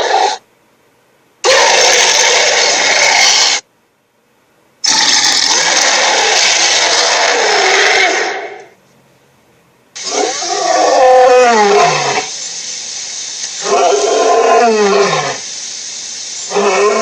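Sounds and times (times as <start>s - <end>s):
harsh rasping creature roars: 1.5s - 3.6s, 4.9s - 8.6s, 10.0s - 12.3s, 13.6s - 15.4s, 16.5s - 17.0s.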